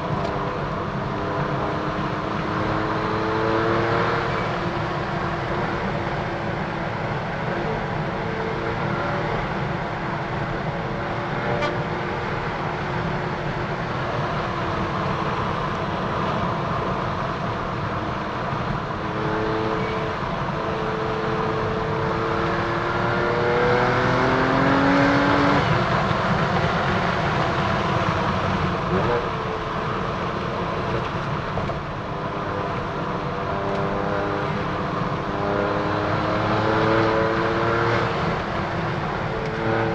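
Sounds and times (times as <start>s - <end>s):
car engine revving while driving: 0.0s - 30.1s, 31.6s - 39.9s.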